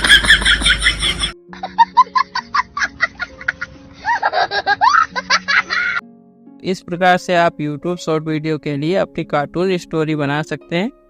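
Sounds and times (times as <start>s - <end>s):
high-pitched cartoon giggling: 0.0s - 6.0s
meme music clip: 0.0s - 11.0s.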